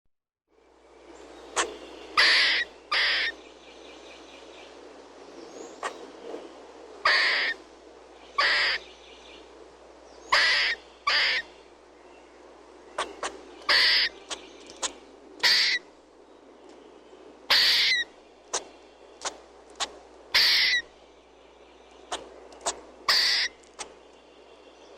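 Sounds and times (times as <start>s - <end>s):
squirrel chirping: 1.5s - 3.4s, 8.3s - 9.0s, 12.9s - 15.9s, 17.5s - 21.0s, 21.8s - 24.2s.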